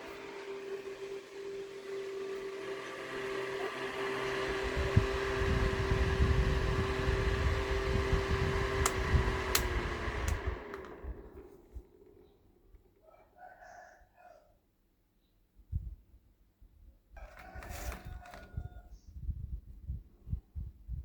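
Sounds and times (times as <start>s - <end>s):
electric fan motor humming: 0.0s - 12.7s
airflow buffeting microphone: 4.2s - 11.4s
sharp clicks: 8.8s - 11.0s.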